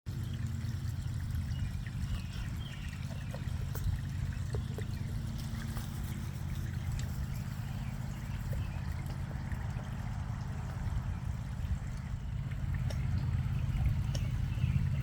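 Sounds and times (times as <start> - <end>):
steady low rumble: 0.1 - 15.0
water drips: 0.1 - 15.0
water trickling and splashing: 0.1 - 15.0.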